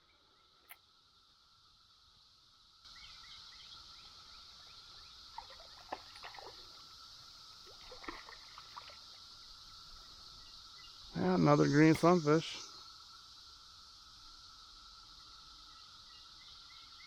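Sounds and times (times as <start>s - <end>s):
cicada drone: 0.0s - 17.0s.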